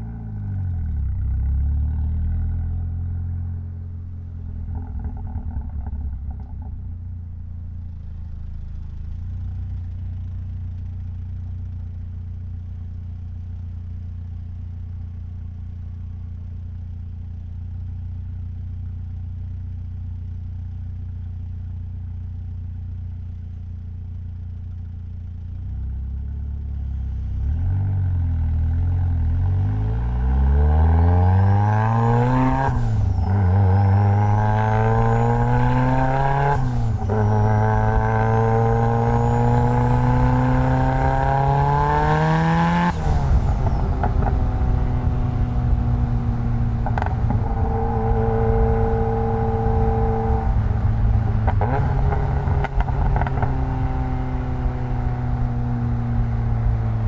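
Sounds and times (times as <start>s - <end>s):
car engine accelerating: 0.0s - 12.0s, 25.6s - 57.0s.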